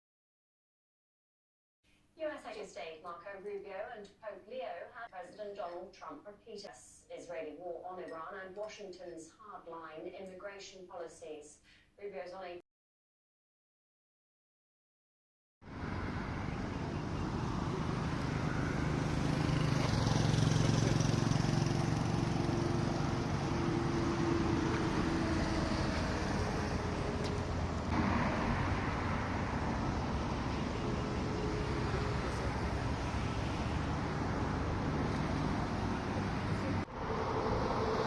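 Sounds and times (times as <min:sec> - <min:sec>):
passing vehicles: 0:15.7 - 0:38.0.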